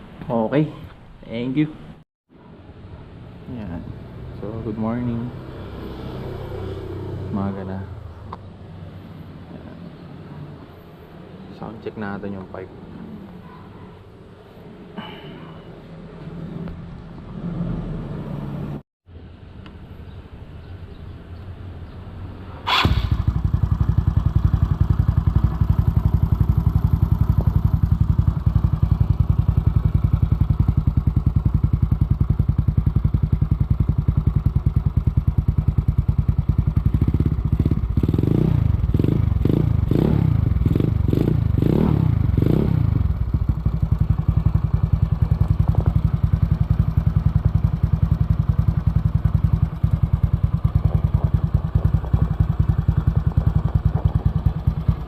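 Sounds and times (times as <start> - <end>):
scooter engine revving: 4.4 - 8.2, 22.6 - 55.0
scooter engine idling: 22.7 - 55.0.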